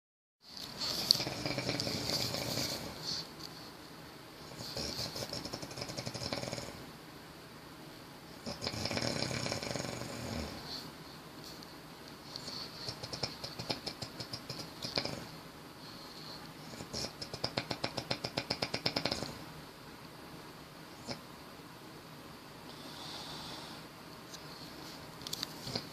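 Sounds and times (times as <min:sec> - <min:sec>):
snoring with rattling pulses: 0:00.9 - 0:03.2, 0:04.5 - 0:06.8, 0:08.4 - 0:10.8, 0:12.4 - 0:15.4, 0:16.6 - 0:19.5, 0:25.6 - 0:25.9.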